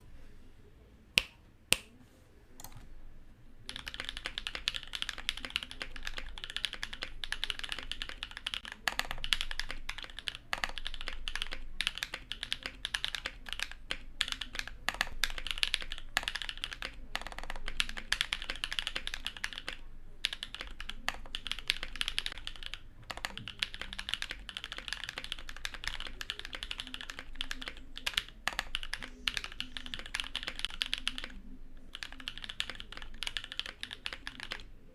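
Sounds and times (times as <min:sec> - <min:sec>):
mechanical keyboard typing: 0:03.7 - 0:34.7.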